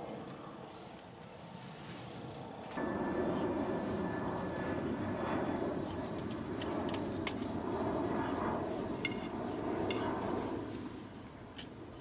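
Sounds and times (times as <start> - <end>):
steady low background noise: 0.0 - 6.5.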